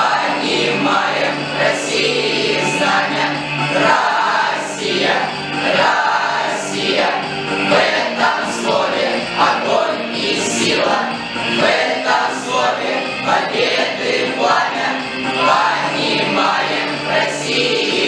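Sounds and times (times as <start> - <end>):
choir singing with accompaniment: 0.0 - 18.0.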